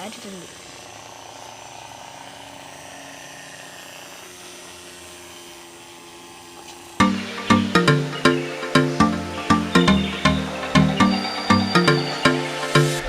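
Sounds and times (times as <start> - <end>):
music with sharp beats: 7.0 - 13.0.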